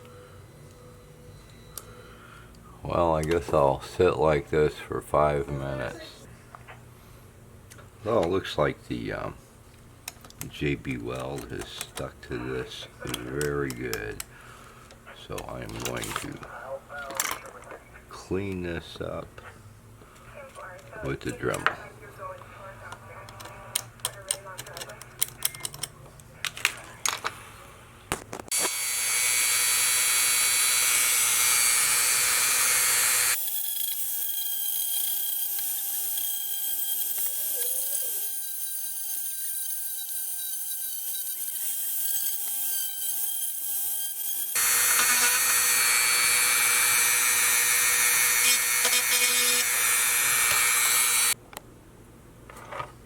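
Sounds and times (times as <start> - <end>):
rotary tool grinding epoxy: 28.5 - 51.4.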